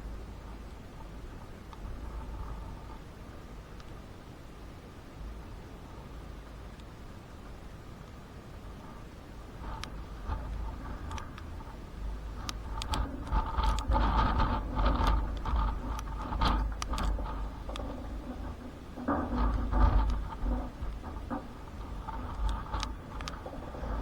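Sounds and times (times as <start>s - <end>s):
wind gusting against microphone: 0.0s - 24.0s
sharp ticks: 9.7s - 23.5s.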